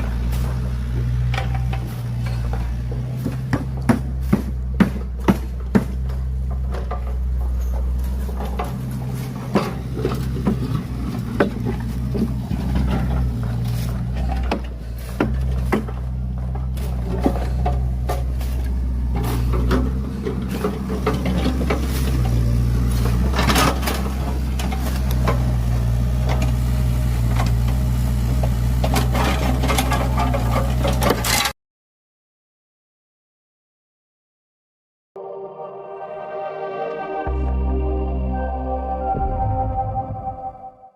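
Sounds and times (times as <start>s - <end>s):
excavator engine running: 0.0s - 31.5s
bucket knocking and scraping soil: 0.2s - 26.6s.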